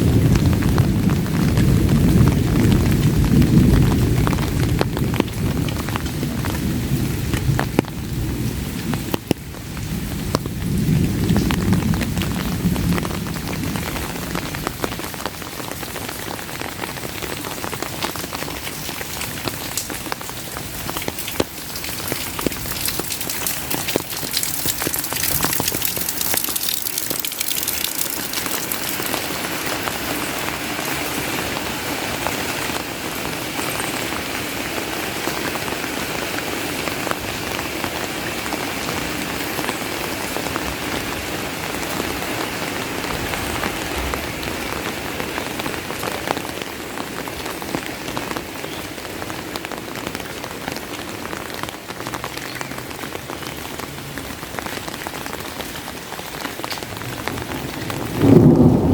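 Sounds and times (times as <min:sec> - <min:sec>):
low rumble of thunder: 0:00.0 - 0:15.3, 0:40.4 - 0:46.8, 0:56.8 - 0:58.9
heavy rain falling: 0:00.0 - 0:58.9
raindrops ticking on an umbrella: 0:00.0 - 0:58.9.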